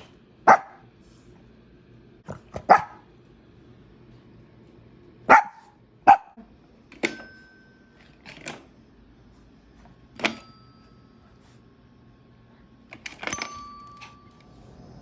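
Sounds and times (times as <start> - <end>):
small dog yapping: 0.5 - 0.8, 2.6 - 3.0.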